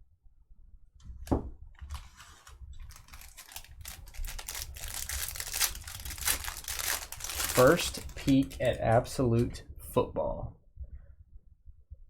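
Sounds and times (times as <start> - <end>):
plastic wrapping crinkling and tearing: 1.8 - 9.5.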